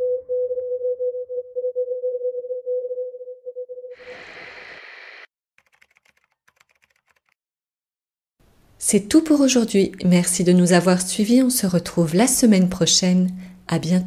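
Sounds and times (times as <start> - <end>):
wavering electronic tone: 0.0 - 5.3.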